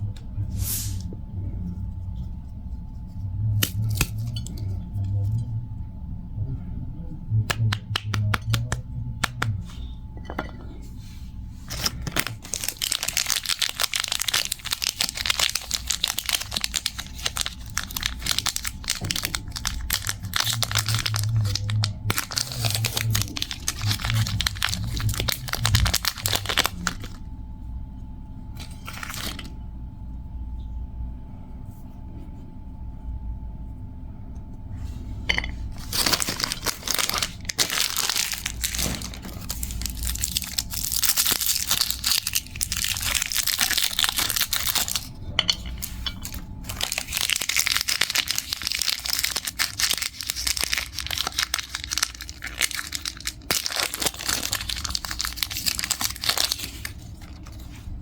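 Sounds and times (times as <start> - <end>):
low steady hum: 0.0 - 58.0
sweet wrappers crackling: 3.4 - 5.5, 7.5 - 9.7, 11.6 - 27.3, 28.6 - 29.6, 35.4 - 58.0.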